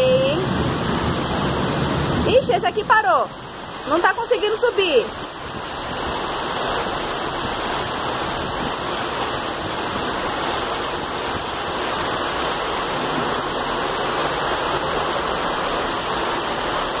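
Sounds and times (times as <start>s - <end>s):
floodwater rushing: 0.0s - 17.0s
heavy rain pouring: 0.0s - 17.0s.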